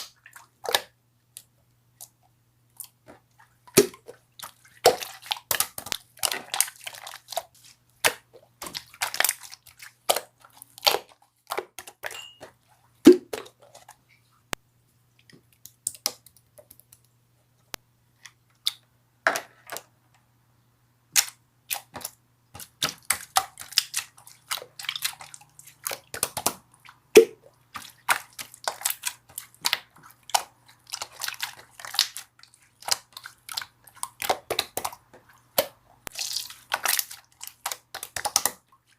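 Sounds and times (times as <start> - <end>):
slime clicking and popping: 35.6 - 38.6.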